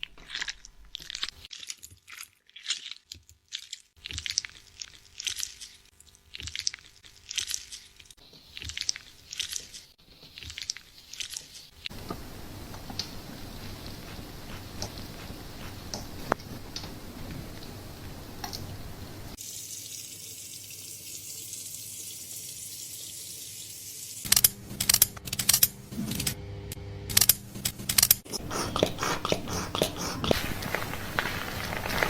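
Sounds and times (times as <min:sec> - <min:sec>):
running water hissing: 0:10.4 - 0:24.7, 0:28.3 - 0:32.0
sharp crackling clicks and rubbing: 0:27.1 - 0:28.4, 0:29.7 - 0:32.0.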